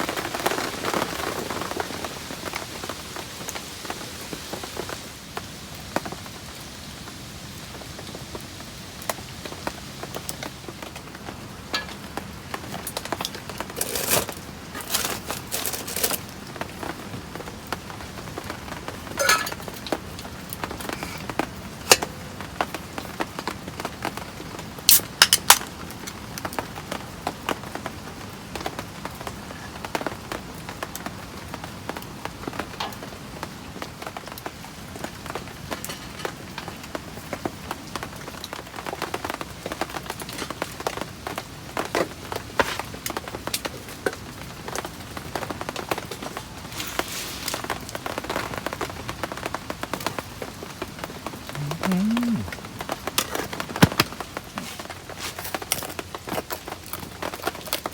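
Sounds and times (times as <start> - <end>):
heavy rain falling: 0.0 - 24.9.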